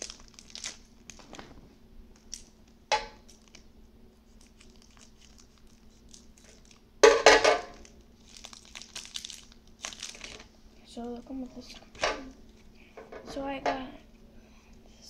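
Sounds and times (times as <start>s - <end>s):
sharp foil crackle: 0.0s - 1.6s, 2.2s - 2.5s, 3.2s - 3.7s, 4.3s - 6.8s, 7.7s - 10.5s
foil wrapper crinkling: 0.0s - 3.7s, 4.3s - 10.5s.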